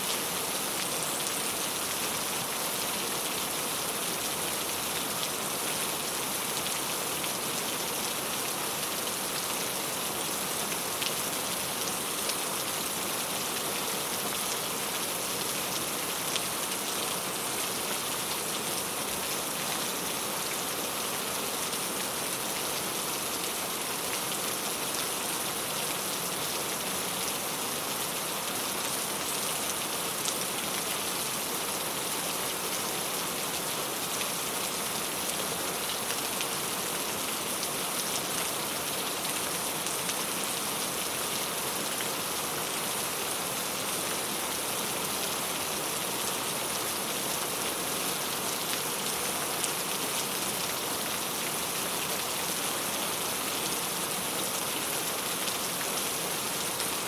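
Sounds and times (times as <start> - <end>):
rain on a tile roof: 0.0 - 57.0.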